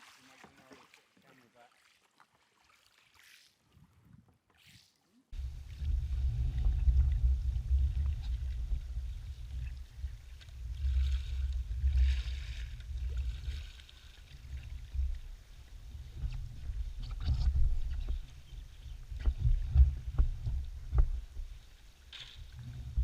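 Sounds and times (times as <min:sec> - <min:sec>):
water splashing: 0:00.0 - 0:15.3
low rumble buffeting microphone: 0:05.4 - 0:23.0.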